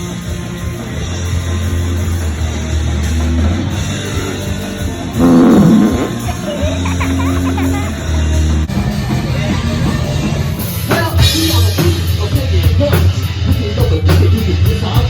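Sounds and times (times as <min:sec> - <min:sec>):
rock music: 0:00.0 - 0:15.0
pitch-bending burst: 0:03.0 - 0:06.4.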